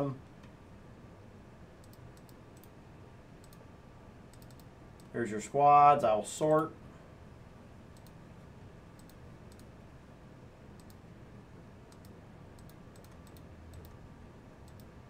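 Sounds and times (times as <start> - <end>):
low room hum: 0.0 - 15.0
computer mouse clicks: 1.8 - 2.8, 3.4 - 3.6, 4.3 - 5.1, 7.9 - 8.2, 9.0 - 9.7, 10.8 - 11.0, 11.9 - 14.0, 14.6 - 14.9.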